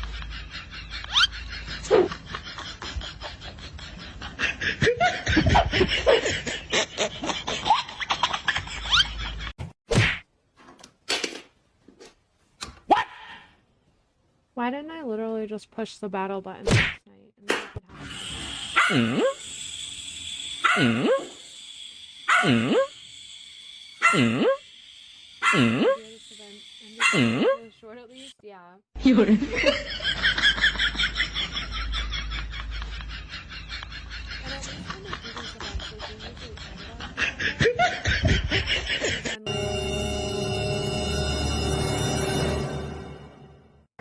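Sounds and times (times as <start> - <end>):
person laughing: 0.0 - 9.6, 29.0 - 39.5
dog calling: 27.0 - 27.7.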